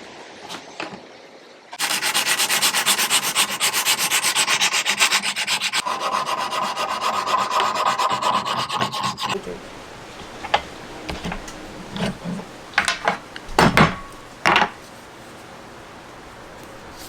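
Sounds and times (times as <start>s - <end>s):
sandpaper rubbing on wood: 1.8s - 9.4s.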